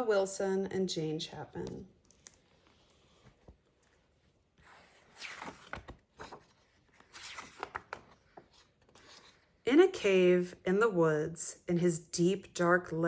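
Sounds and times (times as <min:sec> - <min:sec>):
book pages rustling and turning: 0:01.6 - 0:09.6.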